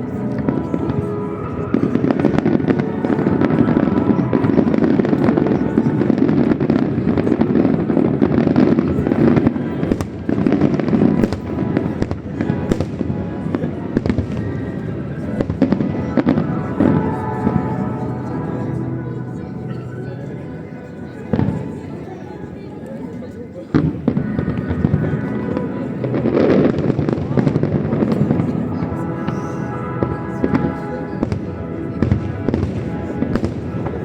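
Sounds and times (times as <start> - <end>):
fireworks bursting and crackling: 0.0 - 19.0, 30.0 - 34.0.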